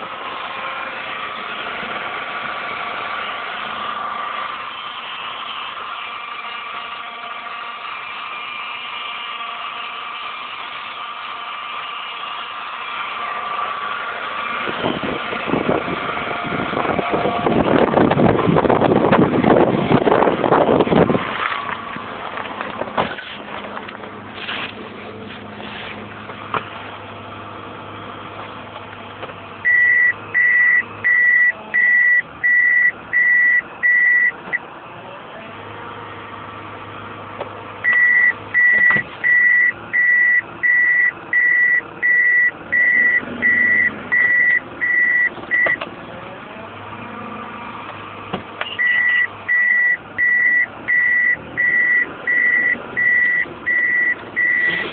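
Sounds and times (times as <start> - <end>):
car engine idling hum: 0.0 - 54.9
car warning buzzer beeping: 29.6 - 34.4, 37.8 - 45.8, 48.7 - 54.9.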